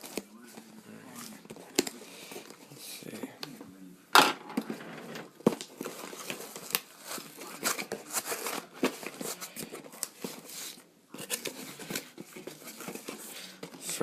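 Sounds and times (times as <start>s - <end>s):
packaging crinkling and tearing: 5.3s - 13.6s.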